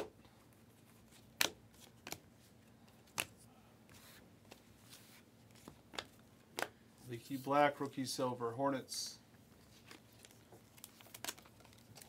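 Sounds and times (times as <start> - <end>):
cards being flicked: 1.2 - 2.3, 3.0 - 3.4, 5.6 - 6.8
card rustle: 9.6 - 12.0.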